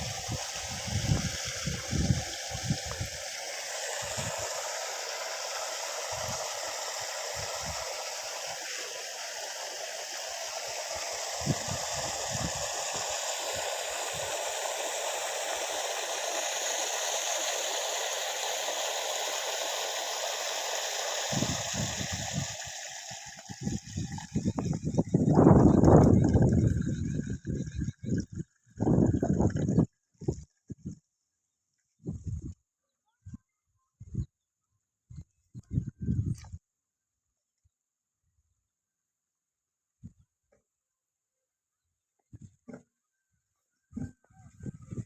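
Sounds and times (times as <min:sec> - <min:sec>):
water spraying from hose: 0:00.0 - 0:30.4.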